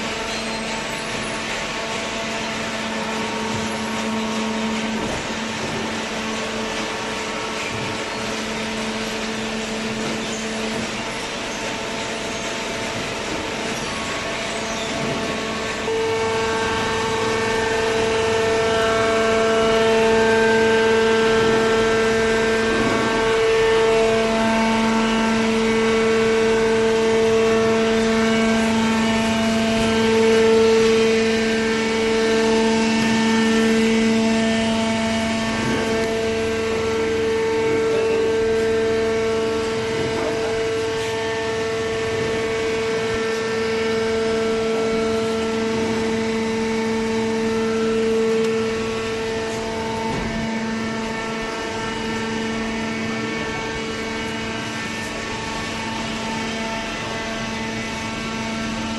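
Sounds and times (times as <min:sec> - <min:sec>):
hydraulic baler humming: 0:00.0 - 0:58.9.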